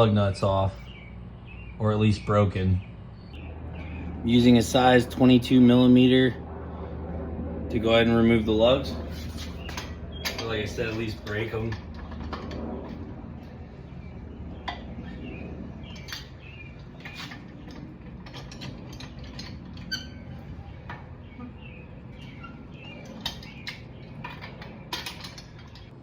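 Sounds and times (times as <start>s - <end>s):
low steady hum: 0.0s - 26.0s.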